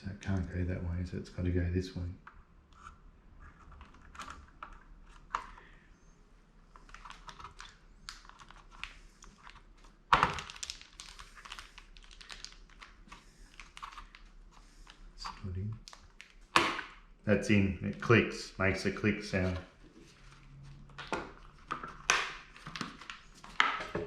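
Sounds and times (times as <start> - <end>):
loud plastic snap: 16.5 - 17.0.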